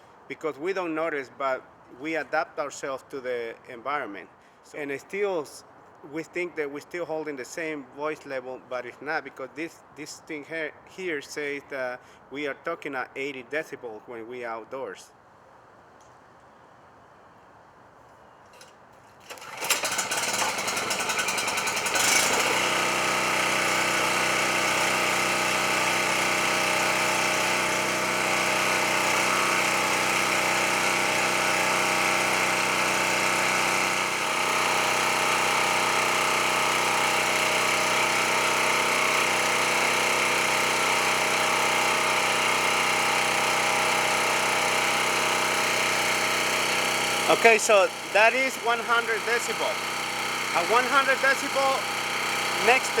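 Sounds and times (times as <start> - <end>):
generator engine running: 19.2 - 53.0.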